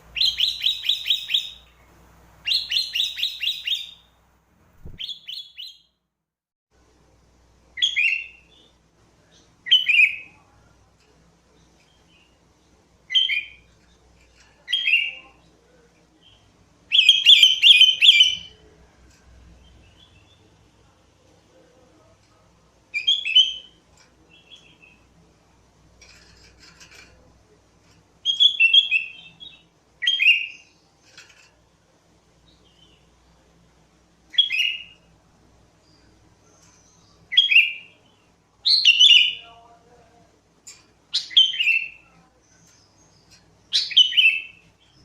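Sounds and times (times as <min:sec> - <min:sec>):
bulbul singing: 0:00.0 - 0:04.1, 0:04.8 - 0:05.9.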